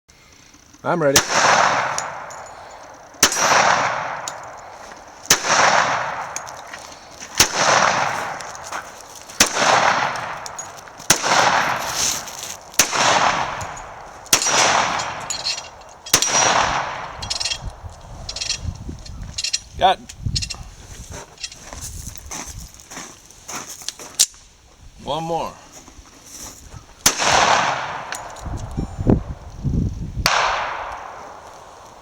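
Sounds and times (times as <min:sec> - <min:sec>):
pistol shots with echo: 0:01.1 - 0:06.7, 0:07.4 - 0:08.6, 0:09.4 - 0:11.9, 0:12.8 - 0:17.9, 0:27.0 - 0:28.3, 0:30.2 - 0:31.8.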